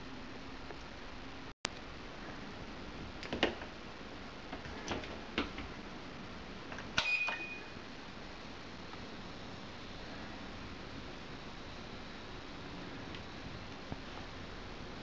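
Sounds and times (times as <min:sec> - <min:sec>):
high ringing tone: 0:07.0 - 0:07.8.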